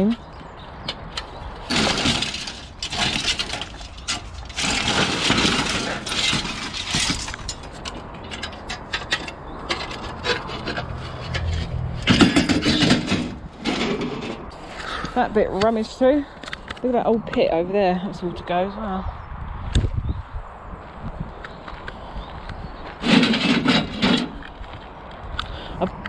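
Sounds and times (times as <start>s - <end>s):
scrap metal scraping and rustling: 1.0s - 16.8s, 22.9s - 24.8s.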